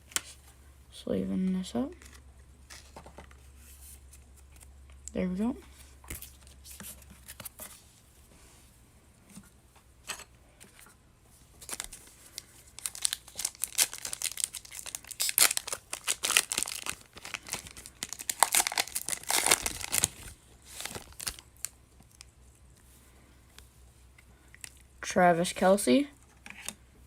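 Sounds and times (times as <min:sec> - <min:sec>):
foil wrapper crinkling and tearing: 0:11.6 - 0:22.3.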